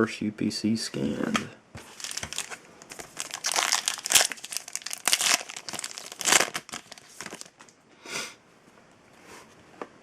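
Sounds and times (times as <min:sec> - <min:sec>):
foil wrapper crinkling: 0:01.8 - 0:07.7.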